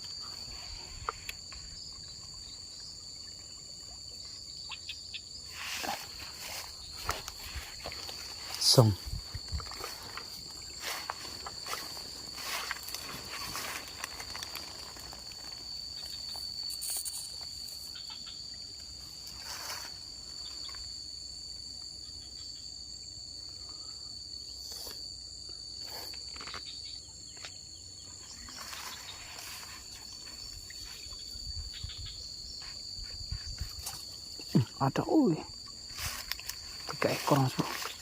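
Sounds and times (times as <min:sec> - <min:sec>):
insects trilling: 0:00.0 - 0:38.0
rustles or splashes: 0:05.5 - 0:17.9, 0:35.6 - 0:38.0.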